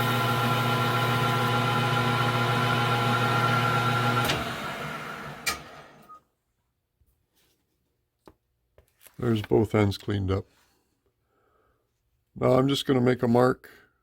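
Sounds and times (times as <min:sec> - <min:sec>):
metal lathe humming: 0:00.0 - 0:06.0.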